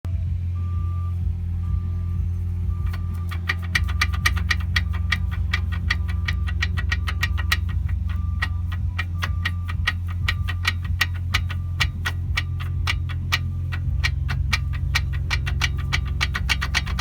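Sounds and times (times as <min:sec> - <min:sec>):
car humming: 0:00.0 - 0:17.0
short electronic beeps: 0:00.6 - 0:12.7
brake clicking fast: 0:01.2 - 0:17.0.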